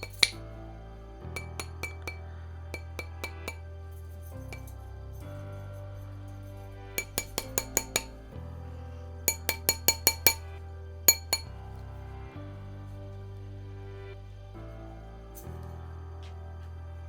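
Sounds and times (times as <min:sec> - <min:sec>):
hammer tapping metal ring: 0:00.0 - 0:00.4, 0:01.4 - 0:02.2, 0:02.8 - 0:03.6, 0:04.5 - 0:04.7, 0:07.0 - 0:08.2, 0:09.3 - 0:10.4, 0:11.1 - 0:11.5
background music: 0:00.0 - 0:17.0.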